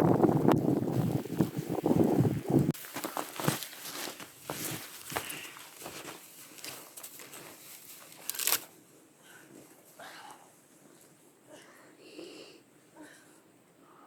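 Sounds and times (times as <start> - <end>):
wind buffeting microphone: 0.0 - 2.8
footsteps crunching in snow: 0.7 - 8.8.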